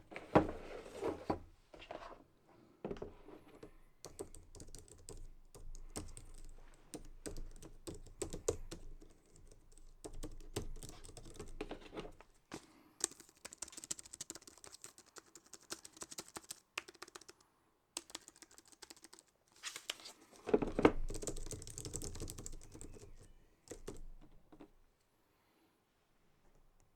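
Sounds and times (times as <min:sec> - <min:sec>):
keyboard keys clicking: 0:04.0 - 0:12.2, 0:13.0 - 0:17.4, 0:18.0 - 0:19.9, 0:20.6 - 0:24.7.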